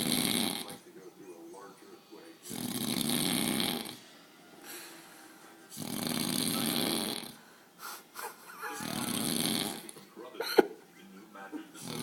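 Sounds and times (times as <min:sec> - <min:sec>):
man snoring: 0:00.0 - 0:00.8, 0:02.4 - 0:04.0, 0:05.7 - 0:07.4, 0:08.8 - 0:10.0, 0:11.8 - 0:12.0
quiet breaths: 0:00.0 - 0:10.1.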